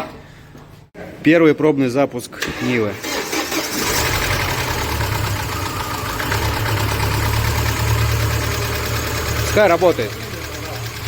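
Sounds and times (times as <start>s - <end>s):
car engine idling: 3.8s - 11.0s.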